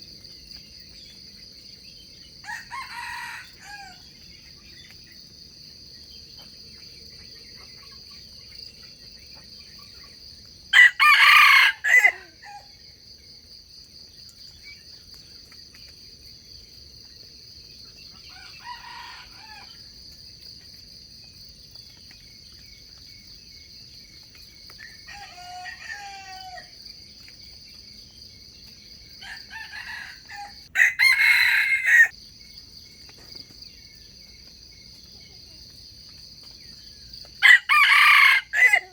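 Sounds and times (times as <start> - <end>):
rooster crowing: 2.4 - 4.1, 10.7 - 12.7, 18.3 - 19.8, 24.8 - 26.7, 29.2 - 32.1, 37.4 - 38.9.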